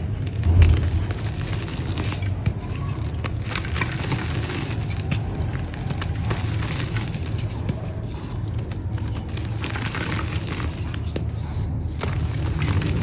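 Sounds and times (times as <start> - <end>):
steady low rumble: 0.0 - 2.3.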